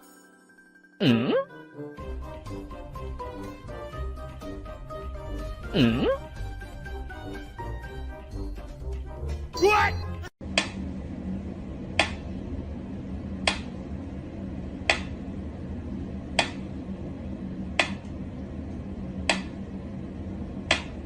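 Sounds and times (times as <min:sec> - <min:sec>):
low steady hum: 0:10.4 - 0:21.0.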